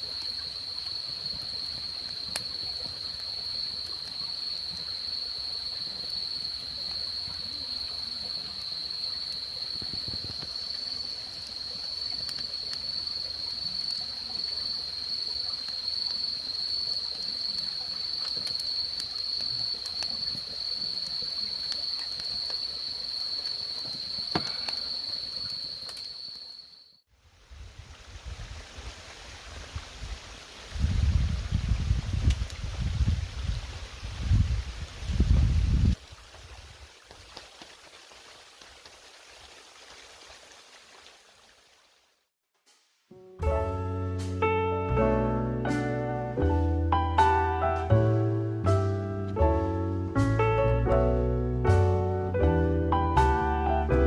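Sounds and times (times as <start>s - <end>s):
crickets chirring: 0.0s - 27.0s.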